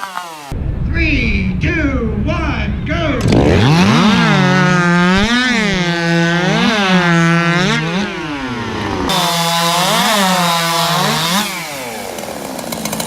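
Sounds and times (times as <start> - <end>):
chainsaw cutting through log: 0.0 - 0.6, 3.3 - 13.0.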